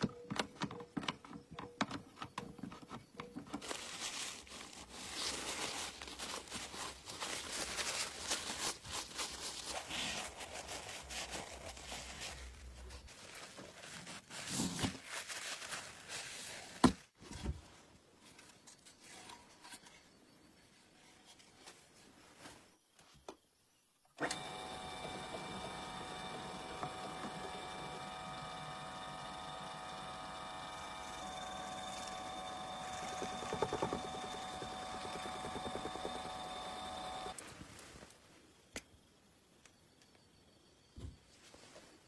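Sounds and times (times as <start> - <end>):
rubbing and scraping by hand: 3.6 - 16.8, 31.1 - 38.0.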